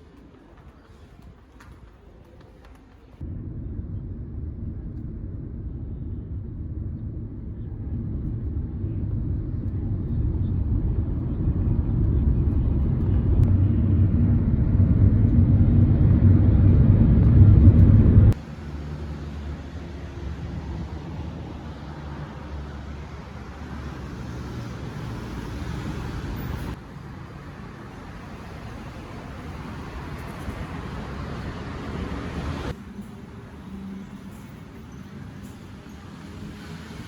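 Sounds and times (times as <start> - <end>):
moving vehicle rumble: 2.5 - 37.0.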